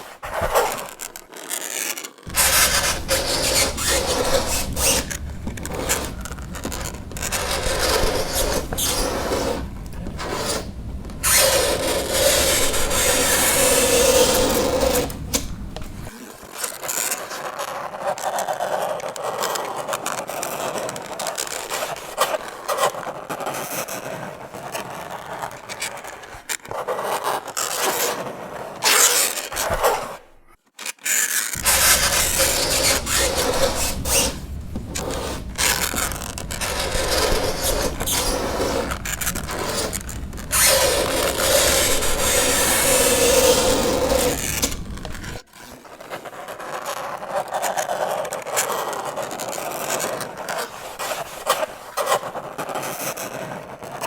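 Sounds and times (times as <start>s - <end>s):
fingernails scraping chalkboard: 0.0s - 16.2s, 31.6s - 45.7s.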